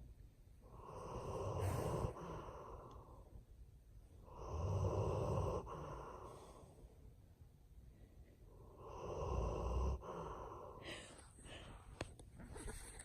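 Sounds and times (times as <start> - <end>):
dog snoring: 0.7 - 2.9, 4.2 - 6.6, 8.7 - 10.7.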